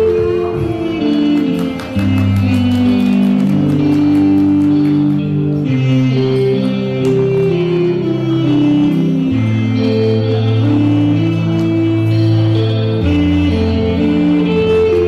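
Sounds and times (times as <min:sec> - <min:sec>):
guitar-led instrumental music: 0:00.0 - 0:15.0.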